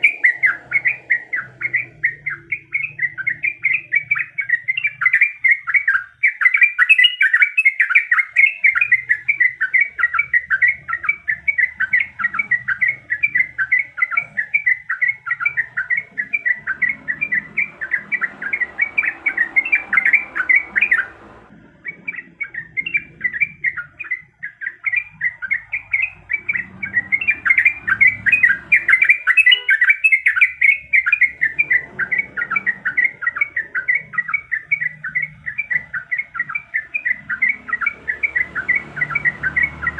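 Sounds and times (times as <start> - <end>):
bulbul singing chattering notes: 0.0 - 39.9.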